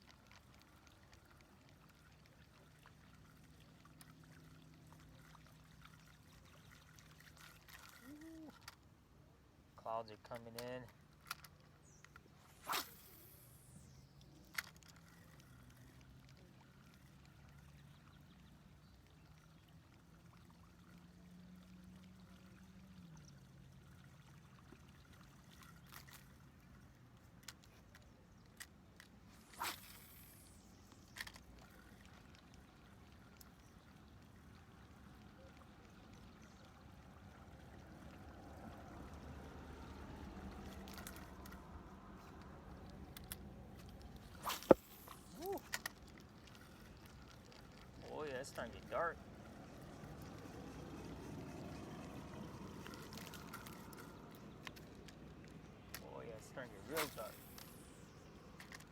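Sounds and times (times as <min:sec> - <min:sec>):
faint water sounds: 0:00.0 - 0:58.9
sharp swishing falling in pitch: 0:12.4 - 0:13.9, 0:29.4 - 0:30.6, 0:44.4 - 0:45.7, 0:56.9 - 0:58.0.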